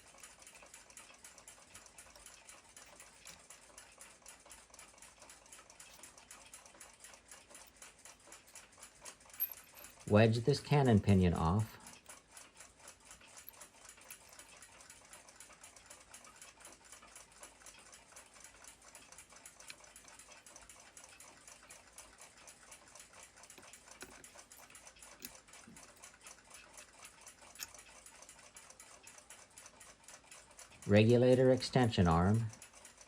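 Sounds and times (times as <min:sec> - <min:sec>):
small tools clicking: 0:00.0 - 0:10.7, 0:11.3 - 0:15.4, 0:23.2 - 0:29.3.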